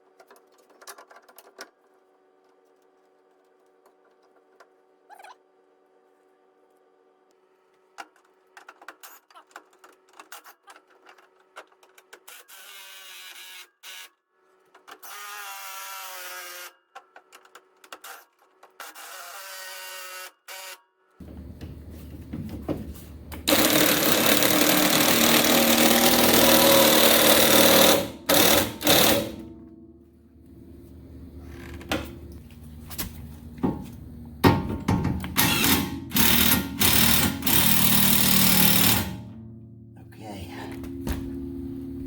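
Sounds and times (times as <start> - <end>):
power tool running: 23.4 - 29.9, 35.3 - 39.3.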